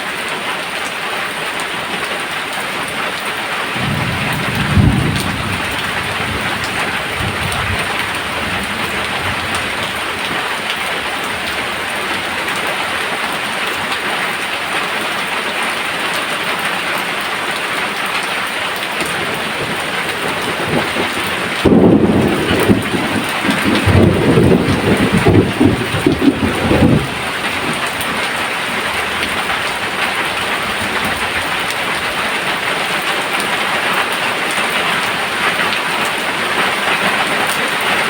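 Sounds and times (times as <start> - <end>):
heavy rain falling: 0.0 - 38.0
thunder rumbling: 3.8 - 13.0, 19.0 - 32.2.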